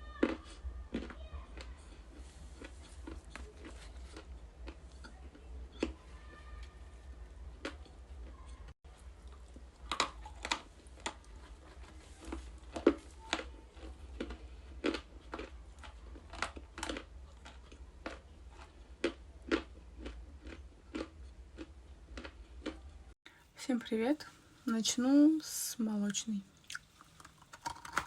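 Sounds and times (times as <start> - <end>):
ice being chewed: 0.1 - 23.1, 26.6 - 28.0.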